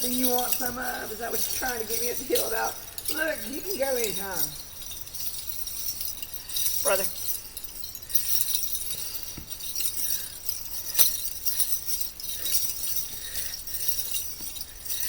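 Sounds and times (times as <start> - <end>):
metallic jingling: 0.0 - 15.0.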